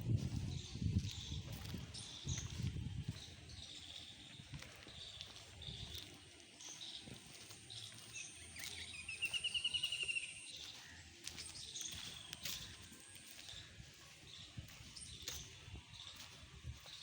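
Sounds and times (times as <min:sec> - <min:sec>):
birds chirping: 0:00.0 - 0:17.0
bird singing a fast trill: 0:06.6 - 0:13.5.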